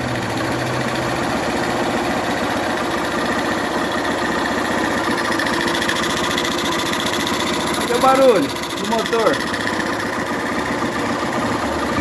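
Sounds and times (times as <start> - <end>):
motorcycle engine running steadily: 0.0 - 12.0.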